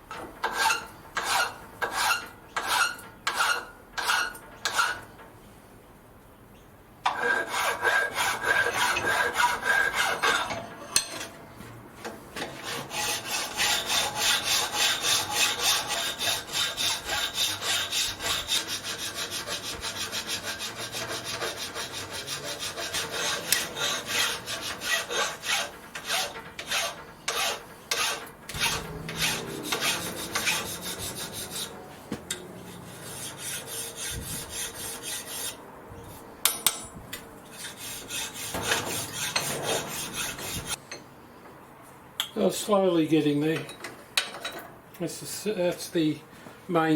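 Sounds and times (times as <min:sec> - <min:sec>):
hand file rasping on metal: 0:00.4 - 0:05.0, 0:07.1 - 0:10.7, 0:12.4 - 0:35.6, 0:37.5 - 0:40.8.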